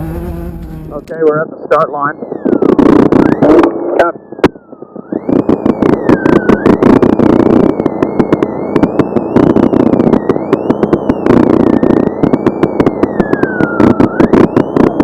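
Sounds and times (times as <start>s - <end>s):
truck engine rumbling: 0.0s - 1.2s
thin whine rising and falling: 0.0s - 15.0s
crackle of sharp clicks: 4.3s - 15.0s.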